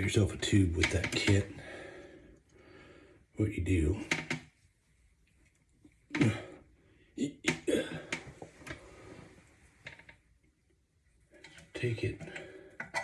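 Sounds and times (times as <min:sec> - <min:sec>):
plastic parts clicking and knocking: 0:00.8 - 0:01.5, 0:04.0 - 0:04.6, 0:07.4 - 0:08.8, 0:11.3 - 0:13.0
person clearing throat: 0:07.2 - 0:08.2.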